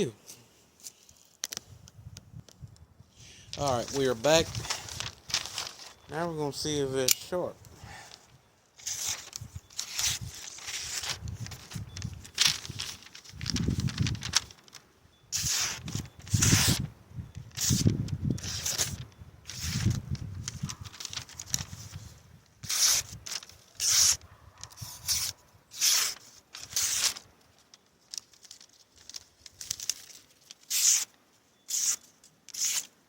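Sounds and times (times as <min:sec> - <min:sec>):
knife blade slicing paper: 0:08.8 - 0:11.6, 0:15.3 - 0:16.8, 0:17.6 - 0:21.8, 0:22.6 - 0:27.3, 0:29.7 - 0:31.1, 0:31.7 - 0:32.9.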